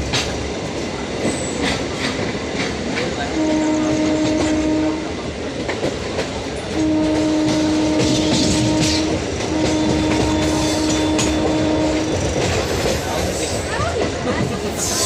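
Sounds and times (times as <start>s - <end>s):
train rumble and wheel clatter: 0.0s - 15.0s
train horn blasts: 3.2s - 5.2s, 6.7s - 12.4s.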